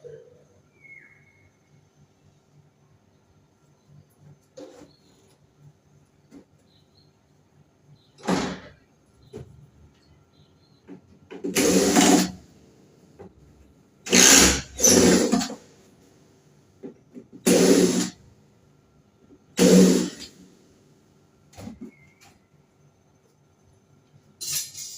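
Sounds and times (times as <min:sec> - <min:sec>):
power screwdriver bursts: 0:11.5 - 0:12.4, 0:14.1 - 0:15.6, 0:17.4 - 0:18.2, 0:19.6 - 0:20.4.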